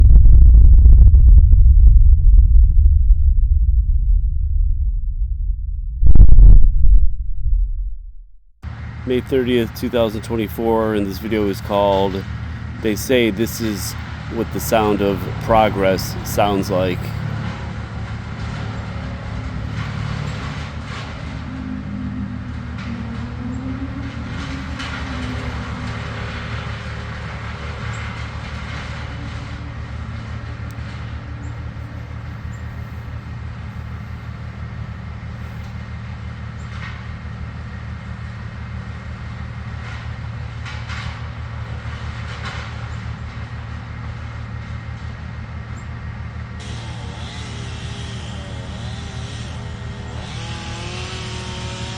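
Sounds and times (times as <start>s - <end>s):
heavy engines rumbling: 8.6s - 51.9s.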